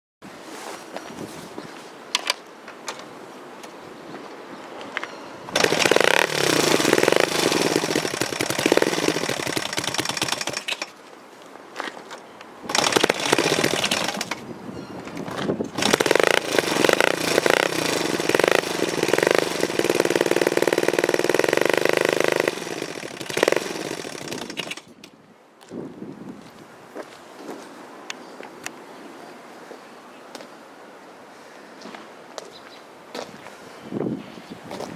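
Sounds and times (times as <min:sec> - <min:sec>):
motorcycle engine running: 0:05.5 - 0:10.7, 0:12.7 - 0:14.4, 0:15.8 - 0:24.8
engine knocking clatter: 0:05.6 - 0:10.8, 0:12.7 - 0:14.3, 0:15.8 - 0:24.8.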